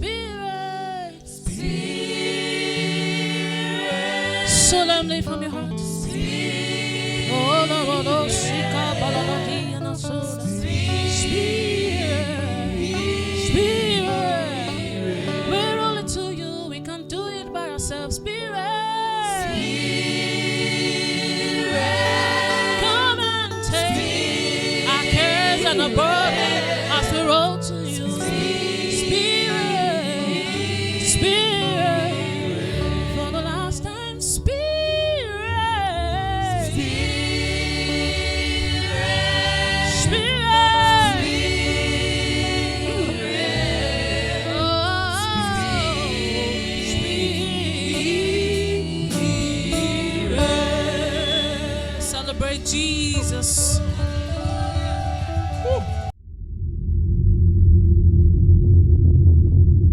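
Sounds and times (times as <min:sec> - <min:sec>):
gospel singing voices: 0:00.0 - 0:56.1
sustained low accompaniment notes: 0:19.7 - 0:59.9.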